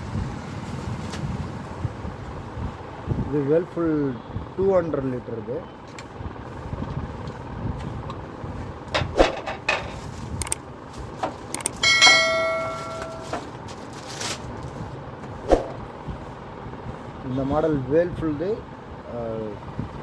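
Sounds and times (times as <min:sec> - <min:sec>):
steady low rumble: 0:05.7 - 0:20.0
sharp knocks on panels: 0:08.9 - 0:10.1
metallic clang: 0:11.7 - 0:13.6.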